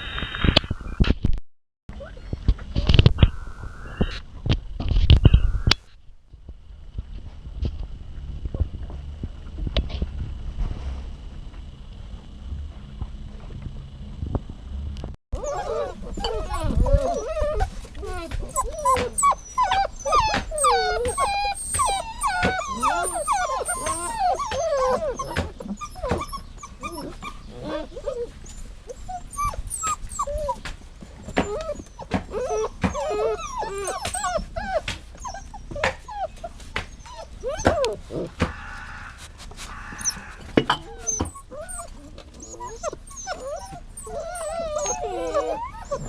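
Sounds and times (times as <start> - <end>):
dog whining and whimpering: 15.4 - 38.3, 39.9 - 46.0.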